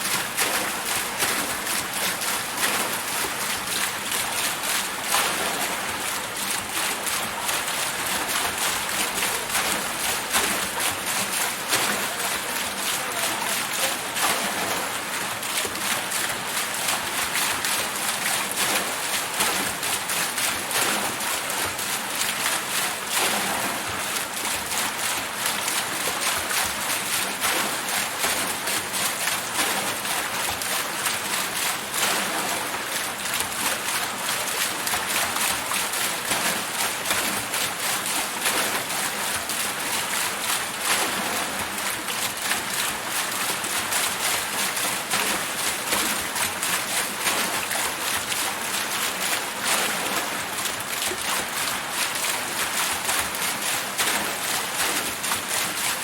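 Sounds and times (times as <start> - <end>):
small water splashes: 0.0 - 56.0
water wheel churning water: 0.0 - 56.0.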